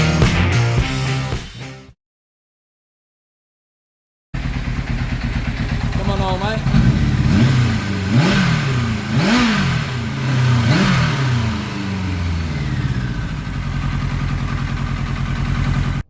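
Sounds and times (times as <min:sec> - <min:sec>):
motorcycle engine revving and idling: 0:04.4 - 0:16.0.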